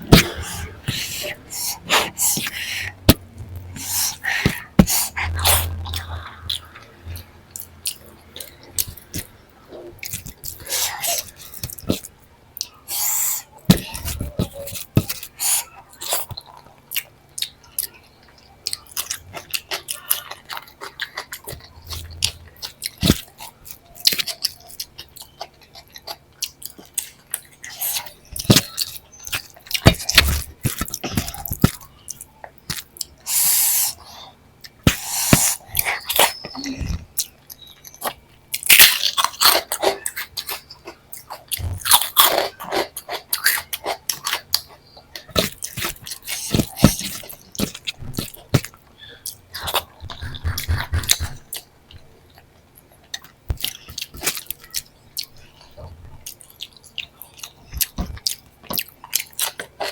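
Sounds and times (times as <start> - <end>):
chewing food close up: 0.1 - 59.9
wet mouth clicks: 49.3 - 51.6.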